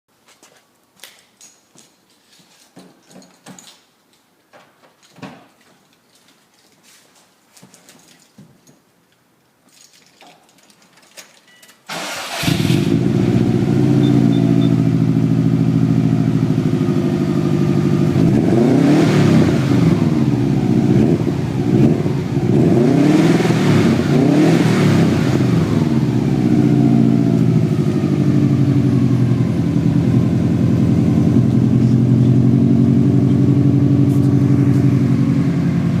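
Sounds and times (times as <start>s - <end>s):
car engine idling: 11.9s - 18.6s, 25.1s - 36.0s
car engine starting: 11.9s - 36.0s
engine revving: 11.9s - 36.0s.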